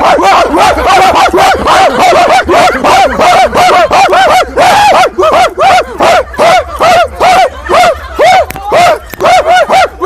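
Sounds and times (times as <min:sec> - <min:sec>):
man imitating dog barking: 0:00.0 - 0:10.0.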